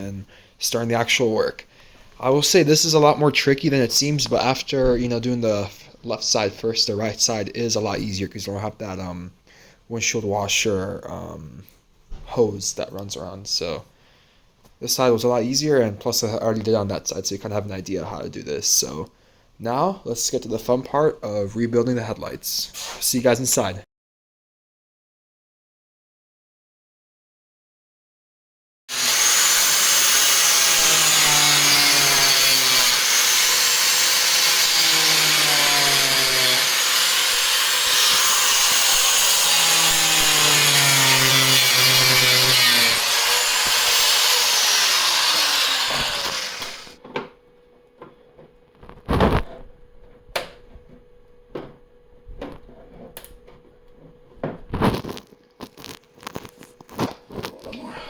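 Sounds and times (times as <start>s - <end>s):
power tool cutting plastic: 28.9s - 47.0s.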